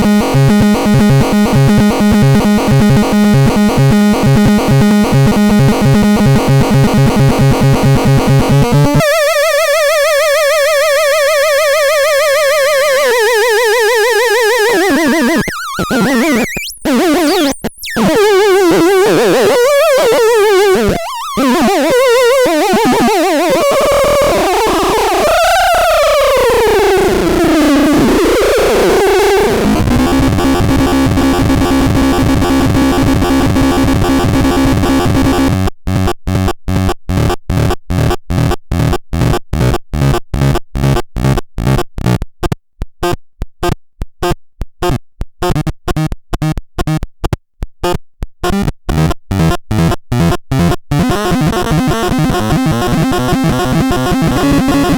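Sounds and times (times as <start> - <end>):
buzzing synth chord: 12.8 - 35.6, 51.0 - 54.9
warbling electronic tone: 14.0 - 35.5
short electronic beeps: 15.3 - 18.2.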